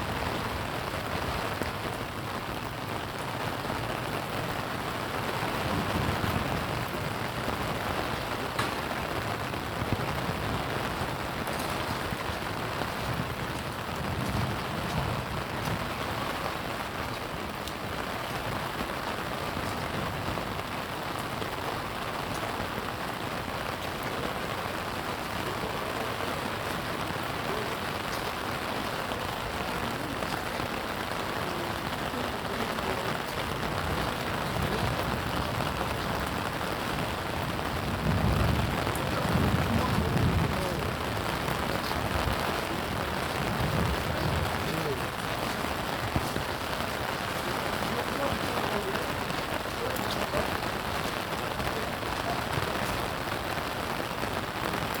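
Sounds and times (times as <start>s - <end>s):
steady rain pattering: 0.0s - 55.0s.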